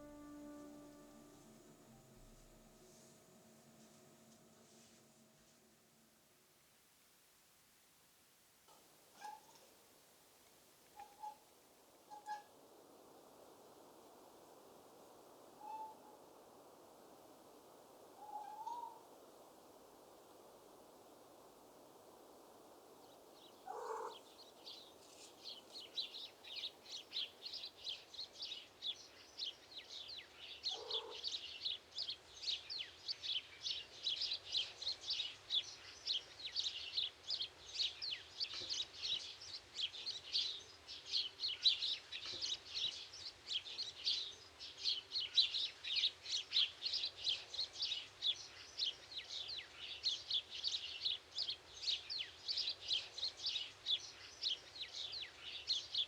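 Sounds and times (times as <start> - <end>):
low-pitched bird call: 0.0 - 2.7
small birds chirping: 23.0 - 56.0.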